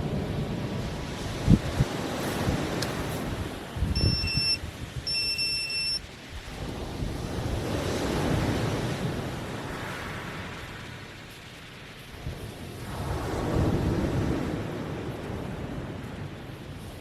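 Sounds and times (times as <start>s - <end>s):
surf washing onto beach: 0.0s - 17.0s
wind buffeting microphone: 0.0s - 17.0s
high electronic beeps: 3.9s - 6.0s.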